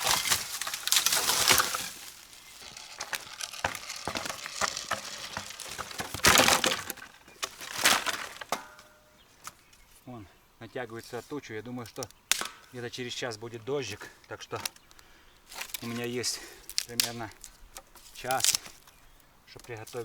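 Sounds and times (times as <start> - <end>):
saw strokes through wood: 0.0 - 6.9
wood crunching as broken: 0.0 - 9.6, 11.0 - 20.0.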